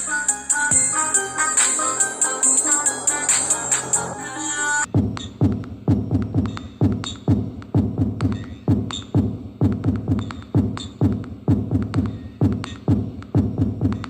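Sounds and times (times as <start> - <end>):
bright jingly electronic music: 0.0 - 4.9
heavy beat of deep kicks: 4.9 - 14.0.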